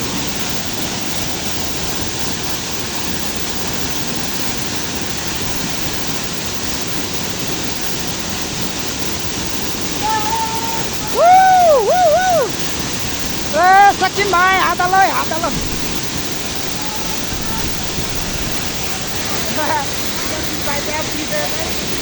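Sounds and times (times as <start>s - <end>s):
waterfall rushing: 0.0s - 22.0s
person calling out: 10.0s - 11.7s, 13.5s - 15.6s.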